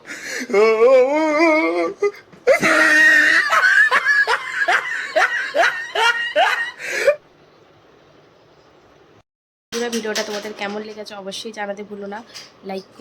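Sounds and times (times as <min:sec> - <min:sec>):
person laughing loudly: 0:01.3 - 0:07.2.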